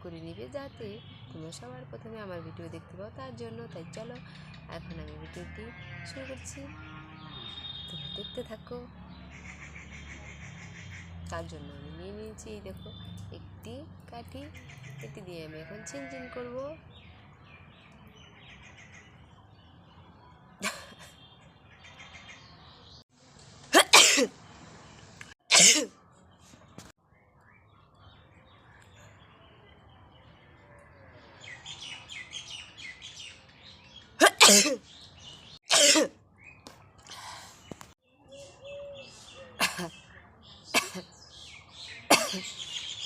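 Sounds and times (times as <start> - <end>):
woman sneezing: 23.8 - 24.3, 25.5 - 25.9, 34.2 - 34.8, 35.7 - 36.1
sniffs and breaths: 37.0 - 38.0.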